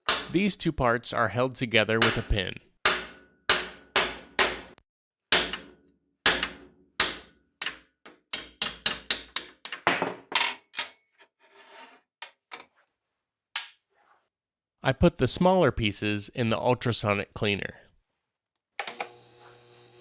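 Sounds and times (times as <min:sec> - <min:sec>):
hammer striking metal pin: 0:00.0 - 0:00.4, 0:02.9 - 0:04.7, 0:05.4 - 0:05.7.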